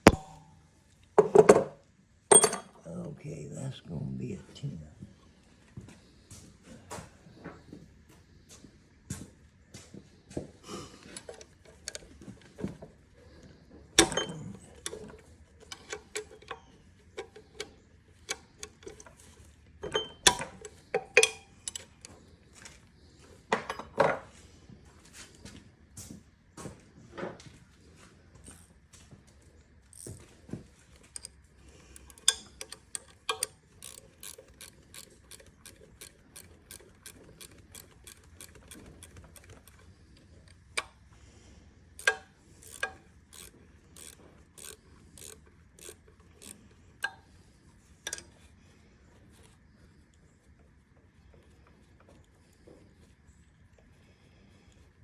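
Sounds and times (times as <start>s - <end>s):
metal clinks of tools: 2.3s - 2.8s, 14.0s - 17.7s, 18.6s - 22.1s, 31.0s - 39.8s, 42.0s - 47.2s
socket ratchet clicking: 14.0s - 19.2s, 19.8s - 22.1s, 31.0s - 39.9s, 42.0s - 47.3s.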